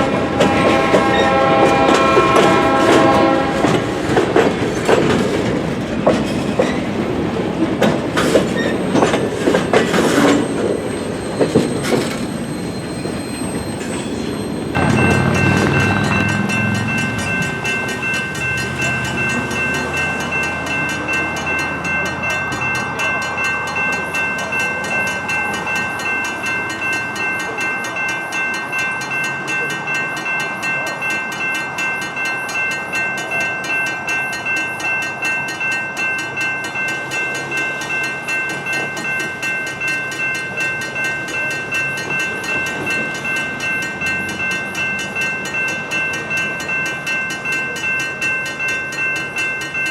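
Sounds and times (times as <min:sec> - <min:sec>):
train wheels clacking on rails: 0:00.2 - 0:49.9
locomotive rumble: 0:11.7 - 0:25.7
bell ringing: 0:14.8 - 0:27.3.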